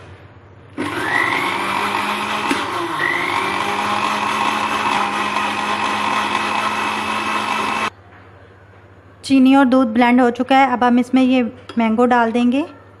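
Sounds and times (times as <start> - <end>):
blender motor whining: 0.8 - 7.9.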